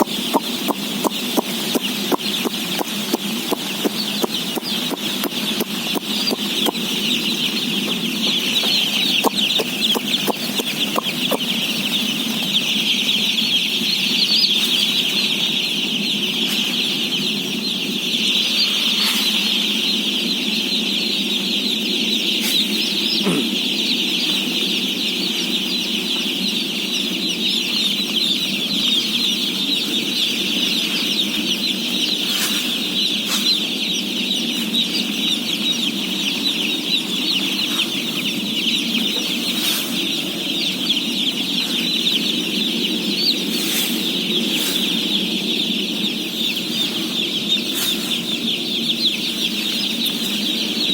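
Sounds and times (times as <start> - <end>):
chicks peeping: 0.0 - 50.9.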